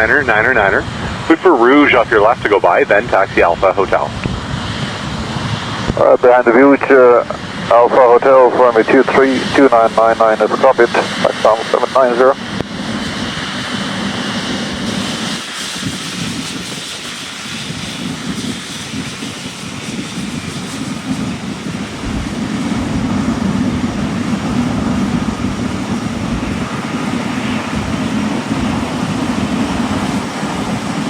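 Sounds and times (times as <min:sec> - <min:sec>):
jet engine noise: 0:00.0 - 0:31.0.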